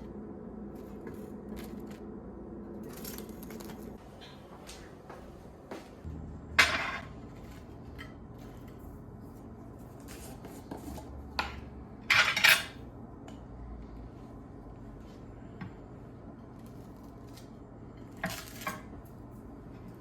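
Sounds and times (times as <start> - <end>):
dishes and cutlery clattering: 11.4 - 12.8.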